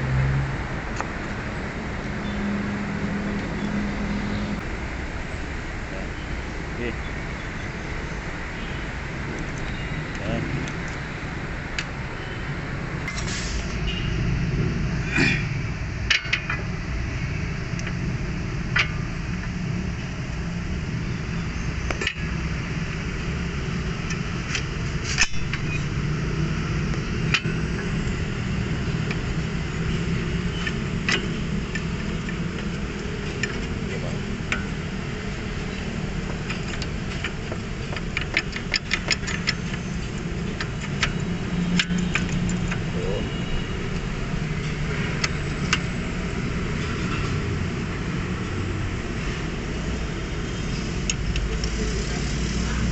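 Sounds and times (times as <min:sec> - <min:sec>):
ratchet clicking: 0:35.6 - 0:42.9.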